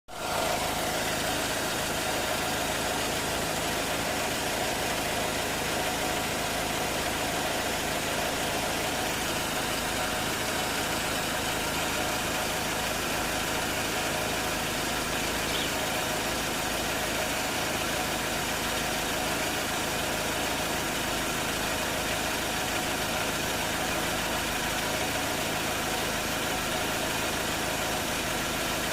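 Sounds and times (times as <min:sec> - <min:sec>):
growling engine noise: 0:00.1 - 0:16.8
car engine idling: 0:00.1 - 0:28.9.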